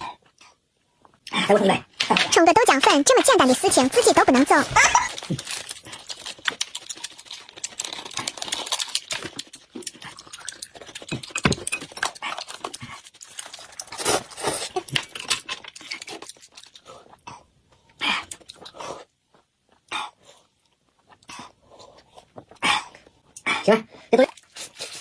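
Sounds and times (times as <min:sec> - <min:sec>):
wet chewing and smacking: 0:03.6 - 0:23.6.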